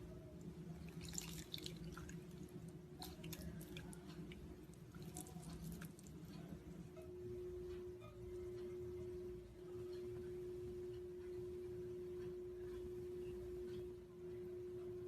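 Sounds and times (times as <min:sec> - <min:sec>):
steady low hum: 0:00.0 - 0:15.0
small crackles and clicks: 0:02.0 - 0:06.7.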